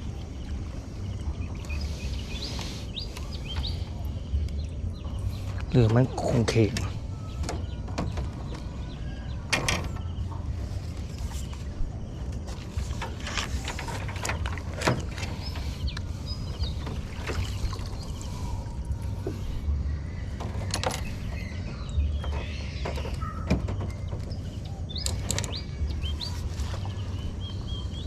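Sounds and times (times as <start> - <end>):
low rumble: 0.0 - 28.0
knocks and scrapes against hull: 5.3 - 18.4, 19.0 - 27.2.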